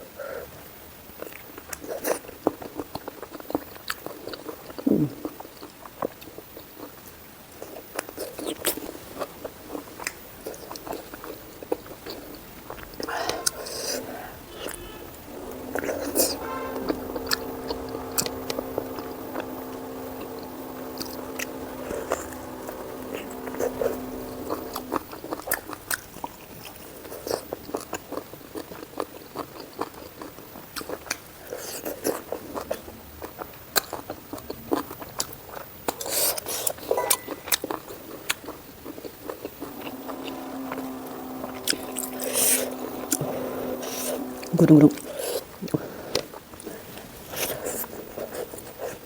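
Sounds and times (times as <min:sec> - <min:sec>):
steady hum: 0:12.5 - 0:25.9, 0:39.6 - 0:45.6.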